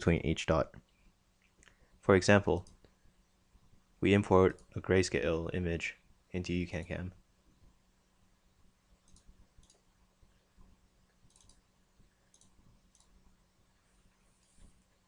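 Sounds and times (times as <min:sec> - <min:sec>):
faint low hum: 0:00.0 - 0:15.0
faint mouse clicks: 0:00.8 - 0:01.9, 0:02.6 - 0:03.0, 0:09.0 - 0:09.9, 0:11.1 - 0:11.6, 0:12.2 - 0:13.2.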